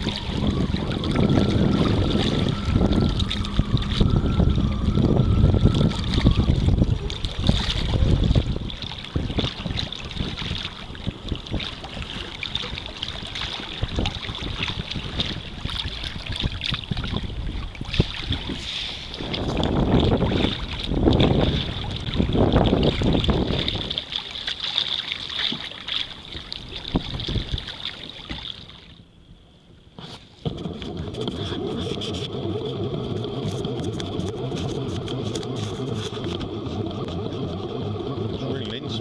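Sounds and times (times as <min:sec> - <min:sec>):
wind buffeting microphone: 0:00.0 - 0:24.1, 0:26.6 - 0:27.8
water lapping against kayak: 0:00.0 - 0:39.0.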